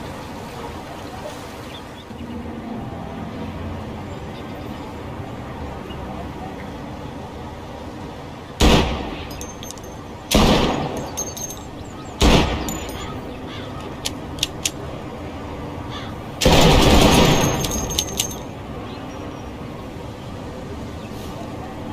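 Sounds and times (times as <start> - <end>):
small metallic clicks: 9.3 - 10.0, 13.8 - 14.8, 17.4 - 18.5
faint ringing tinkle: 9.3 - 10.2, 10.8 - 13.4, 17.4 - 18.6
pistol shots: 10.3 - 11.1, 12.2 - 12.8, 16.4 - 17.6.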